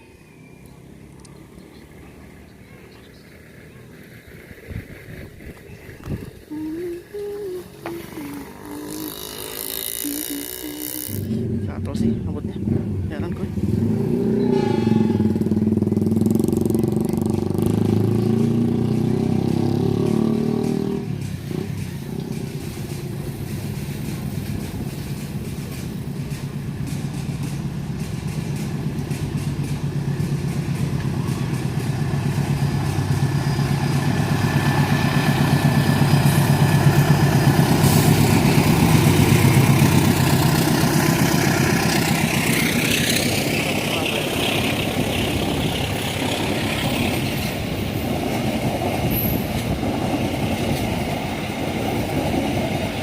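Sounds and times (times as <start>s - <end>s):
diesel locomotive engine throb: 0.9s - 53.0s
loud engine drone: 6.5s - 22.4s, 31.0s - 47.7s.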